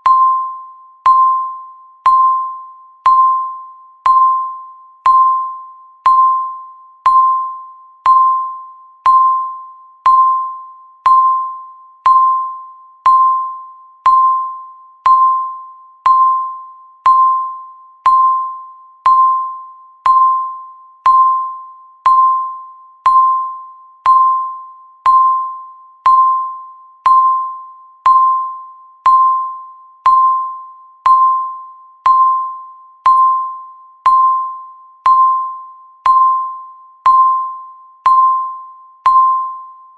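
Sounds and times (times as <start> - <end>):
timer electronic ping: 0.0 - 39.9.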